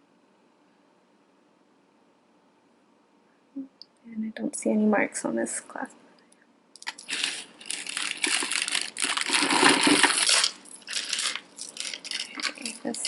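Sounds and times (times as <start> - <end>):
hands rummaging through jewelry: 6.8 - 13.0.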